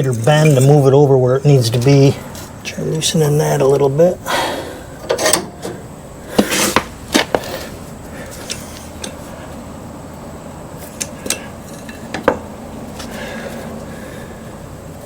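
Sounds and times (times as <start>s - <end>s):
metal tools clinking on metal: 0.0s - 1.0s, 5.0s - 5.8s, 11.0s - 12.4s
low background hum: 0.0s - 15.0s.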